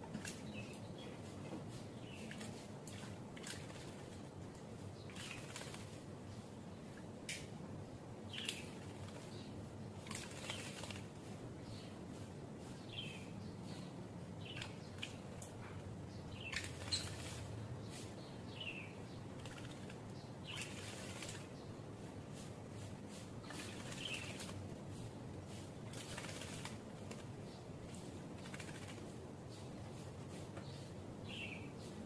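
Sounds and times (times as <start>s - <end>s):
bird splashing in water: 2.2s - 4.3s, 5.1s - 6.0s, 10.0s - 11.1s, 16.4s - 17.5s, 19.4s - 21.6s, 23.2s - 24.6s, 25.5s - 29.1s
bird chirps: 16.1s - 21.3s, 30.6s - 32.0s.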